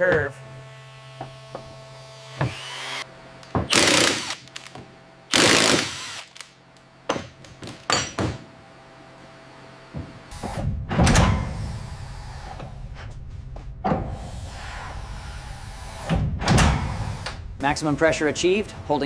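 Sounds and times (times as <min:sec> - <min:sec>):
power tool bursts: 0:01.8 - 0:03.0, 0:03.7 - 0:04.7, 0:05.3 - 0:06.5.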